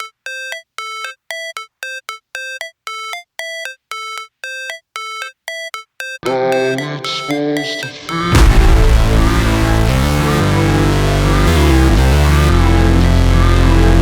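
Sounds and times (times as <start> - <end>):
music track with bass: 8.3 - 14.0.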